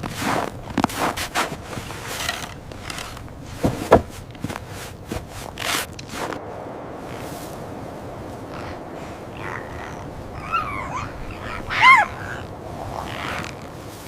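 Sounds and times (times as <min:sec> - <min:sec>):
scraping and rustling: 0:00.0 - 0:06.4, 0:09.4 - 0:14.0.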